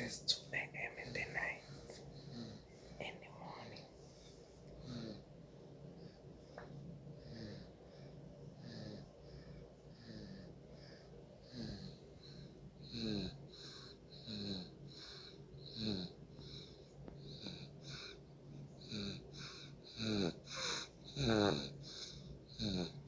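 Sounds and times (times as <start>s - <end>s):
wheezy snoring: 2.1s - 2.9s, 4.8s - 5.3s, 7.2s - 18.2s, 18.8s - 23.0s.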